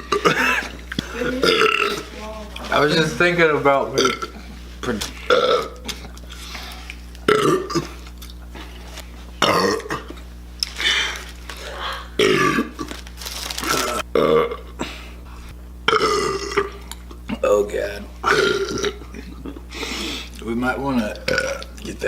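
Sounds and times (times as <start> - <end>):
man belching loudly: 0.0 - 2.1, 2.7 - 4.4, 5.2 - 5.8, 7.3 - 8.0, 9.4 - 10.2, 12.2 - 12.9, 13.7 - 14.8, 15.9 - 19.6, 21.1 - 21.8.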